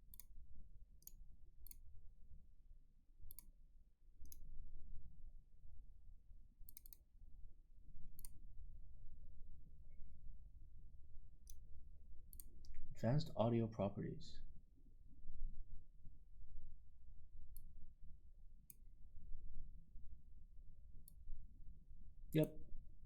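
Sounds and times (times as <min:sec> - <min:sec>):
computer mouse clicking: 0:00.1 - 0:00.3, 0:01.0 - 0:01.8, 0:03.3 - 0:03.5, 0:04.2 - 0:04.4, 0:06.7 - 0:07.0, 0:08.2 - 0:08.4, 0:12.3 - 0:12.8.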